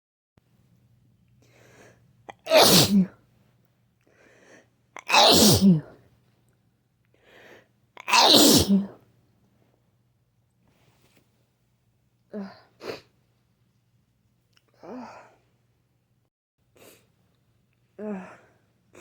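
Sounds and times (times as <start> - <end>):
person sneezing: 2.3 - 3.1, 5.0 - 5.9, 8.0 - 9.0.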